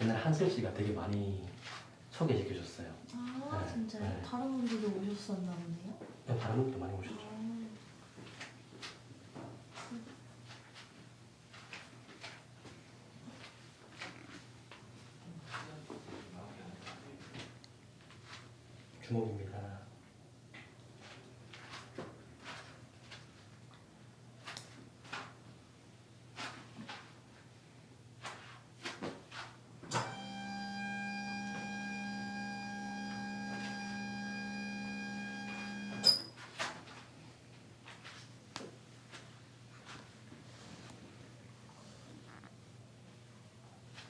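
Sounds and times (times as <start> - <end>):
hands rubbing skin and clothing: 26.3 - 27.2, 37.8 - 41.2
faint low hum: 29.9 - 36.4.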